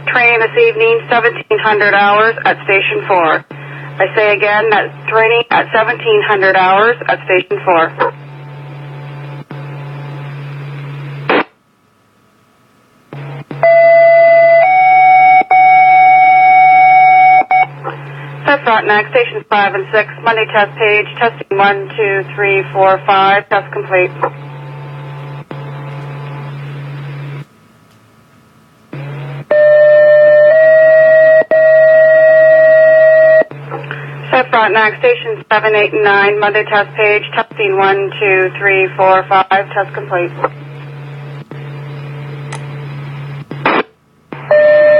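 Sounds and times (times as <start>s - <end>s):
radio scanner hiss with low hum: 0.0s - 44.9s
radio noise burst: 9.5s - 11.6s, 42.8s - 44.5s.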